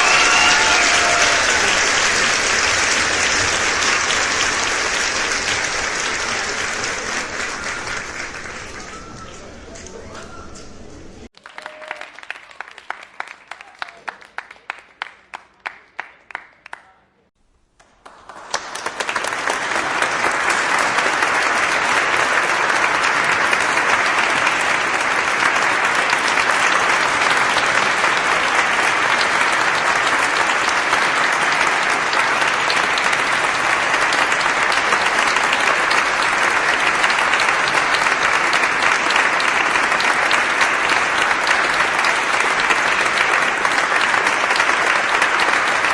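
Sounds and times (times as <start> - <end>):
few people clapping: 0.0 - 10.2, 11.2 - 45.9
large crowd applause: 0.0 - 10.2, 11.2 - 16.9, 17.8 - 45.9.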